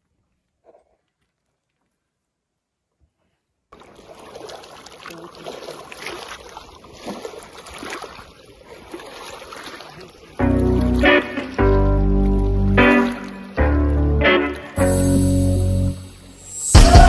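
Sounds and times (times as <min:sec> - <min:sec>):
lake water lapping and splashing: 0:00.1 - 0:02.0, 0:03.7 - 0:14.8.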